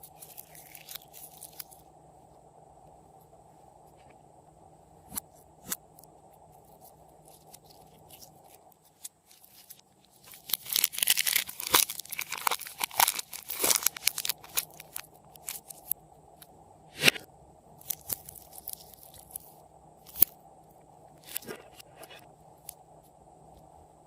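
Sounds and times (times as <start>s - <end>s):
slime clicking and crackling pops: 10.4s - 15.8s.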